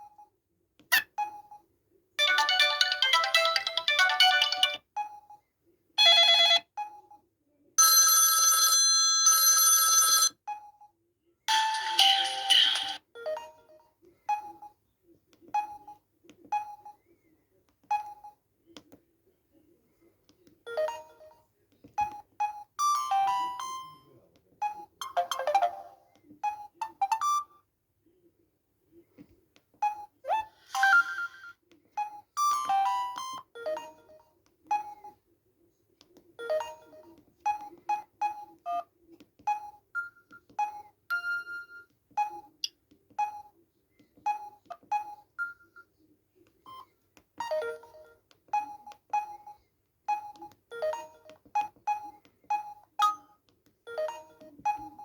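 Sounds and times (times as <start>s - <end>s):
mobile phone ringtone melody: 2.2s - 4.8s, 7.8s - 10.4s, 11.5s - 13.8s, 22.8s - 24.0s, 25.0s - 26.1s, 30.4s - 31.6s, 32.2s - 35.1s, 36.4s - 37.2s, 47.5s - 49.4s, 50.7s - 53.3s, 53.9s - 55.0s.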